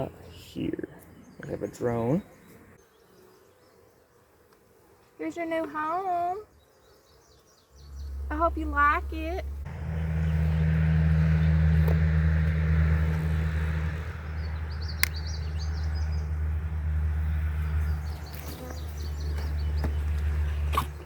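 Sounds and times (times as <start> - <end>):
bees buzzing: 2.8 - 21.0
sharp click: 15.0 - 15.2.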